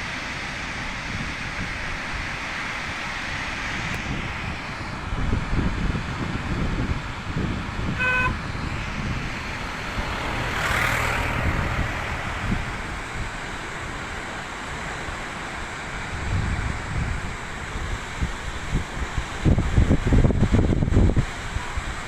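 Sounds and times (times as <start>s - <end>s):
wind buffeting microphone: 3.7s - 22.0s
waterfall rushing: 7.1s - 19.9s.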